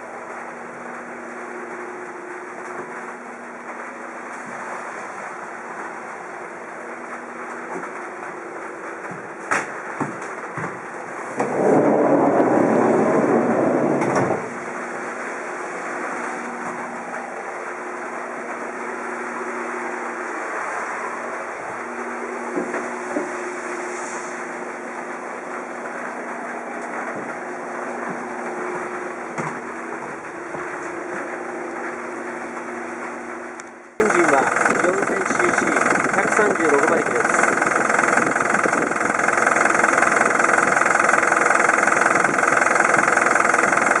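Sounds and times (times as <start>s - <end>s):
truck engine idling: 34.0s - 44.0s.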